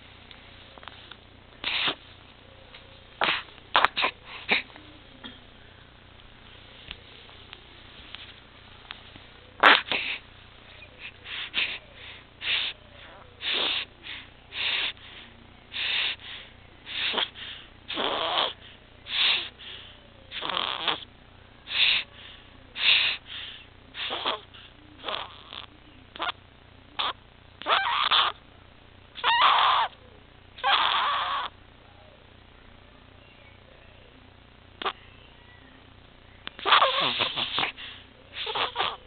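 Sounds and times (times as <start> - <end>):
baby's harsh noisy breathing: 1.6 - 2.0, 9.6 - 10.2, 11.0 - 21.0, 21.7 - 25.5, 36.6 - 39.0.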